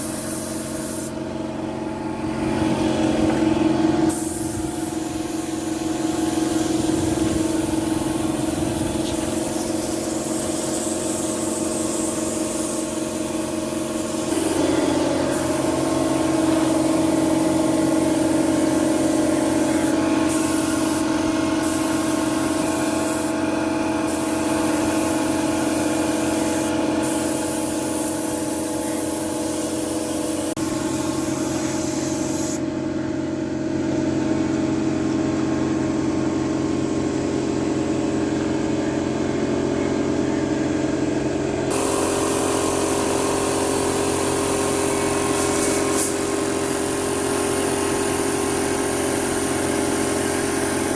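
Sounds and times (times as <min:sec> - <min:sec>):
paint spray hissing: 0:00.0 - 0:01.2, 0:04.1 - 0:32.6, 0:41.7 - 0:50.9
machine hum: 0:41.7 - 0:50.7.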